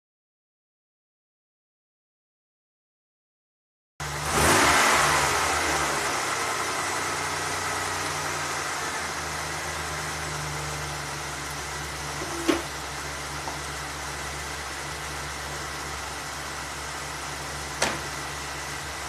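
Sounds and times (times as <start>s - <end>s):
car engine idling: 4.0s - 19.0s.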